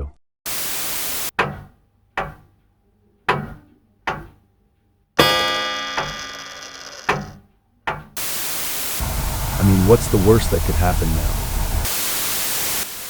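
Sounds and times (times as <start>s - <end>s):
ringing hit: 5.2s - 6.9s.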